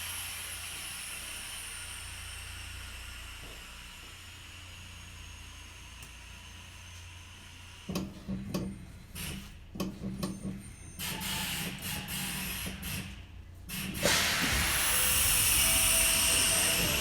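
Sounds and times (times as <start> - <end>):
compressed air hissing: 11.5 - 17.0
loud rush of escaping air: 13.7 - 17.0.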